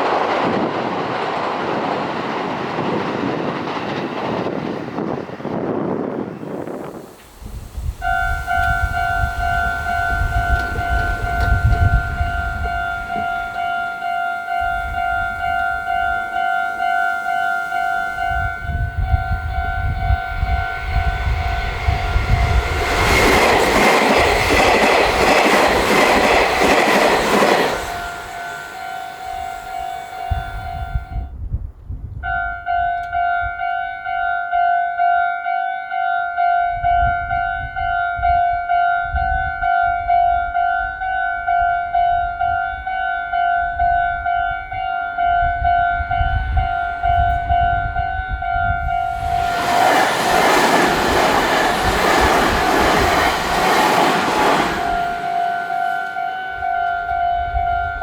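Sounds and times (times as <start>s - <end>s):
train rumbling past: 0.0s - 31.4s, 45.1s - 58.0s
railroad crossing bell ringing: 7.8s - 31.4s, 32.2s - 58.0s.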